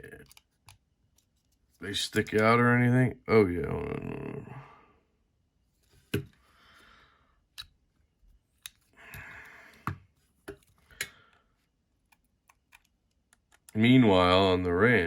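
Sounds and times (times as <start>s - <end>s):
breathy noise: 8.9s - 10.0s.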